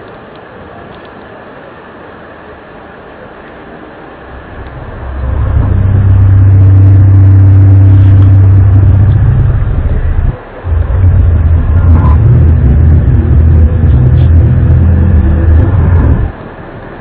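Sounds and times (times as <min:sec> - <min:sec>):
low droning hum: 0:03.9 - 0:17.0.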